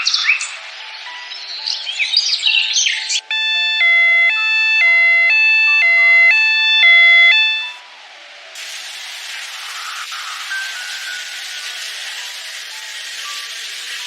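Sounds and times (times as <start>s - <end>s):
two-tone emergency siren: 3.2s - 8.0s.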